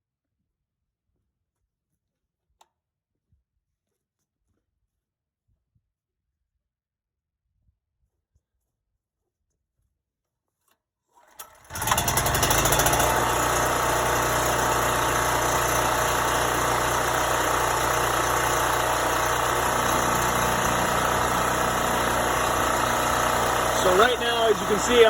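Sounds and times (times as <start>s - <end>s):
generator engine starting and running: 11.2s - 25.0s.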